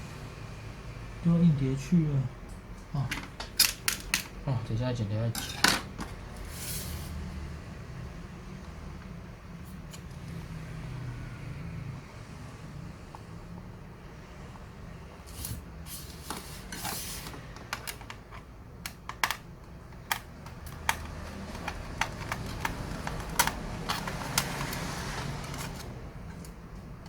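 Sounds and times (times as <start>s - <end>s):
plastic and metal parts clicking: 17.4s - 26.6s.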